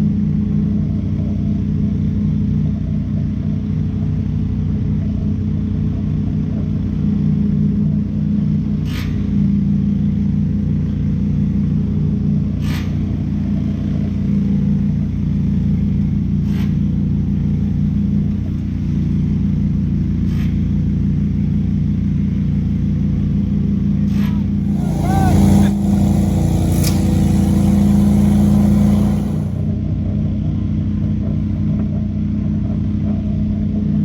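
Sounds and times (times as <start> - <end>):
heavy equipment engine running: 24.6 - 29.7.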